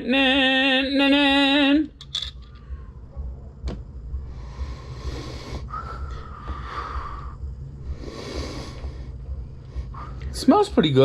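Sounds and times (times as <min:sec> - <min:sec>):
person sniffing deeply: 0:04.6 - 0:07.3, 0:08.0 - 0:09.1.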